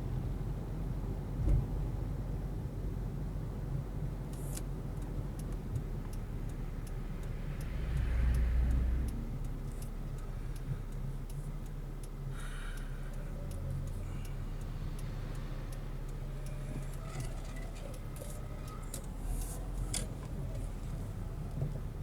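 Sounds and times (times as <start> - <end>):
in-car road and engine rumble: 0.0 - 22.0
regular electronic ticking: 3.1 - 22.0.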